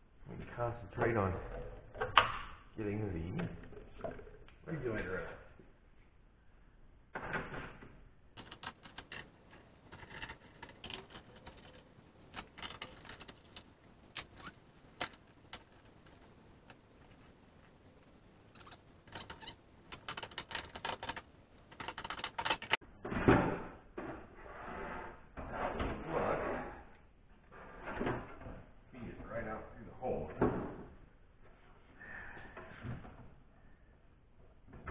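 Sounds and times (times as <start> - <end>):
metal parts rattling: 8.4 - 16.3.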